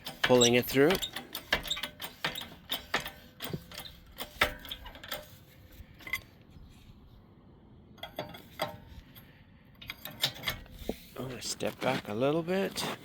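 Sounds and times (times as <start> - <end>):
metallic ratchet clicks: 0.0 - 5.4.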